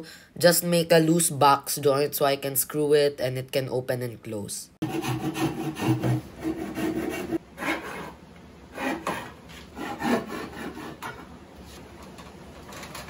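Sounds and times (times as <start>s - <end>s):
hand tool rasping wood: 4.8s - 11.2s.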